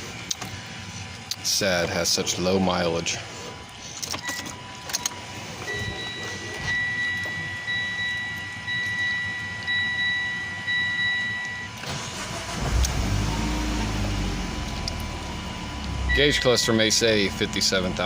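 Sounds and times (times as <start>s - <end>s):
car warning chime: 4.2s - 12.5s, 13.8s - 18.0s
car engine cranking and starting: 11.7s - 18.0s.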